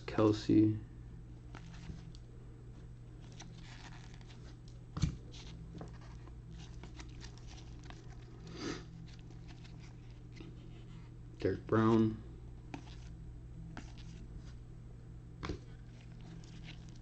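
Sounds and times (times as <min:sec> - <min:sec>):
low electrical hum: 0:00.0 - 0:17.0
cards rustling: 0:01.5 - 0:02.2, 0:03.2 - 0:10.7, 0:11.8 - 0:14.6, 0:15.7 - 0:17.0.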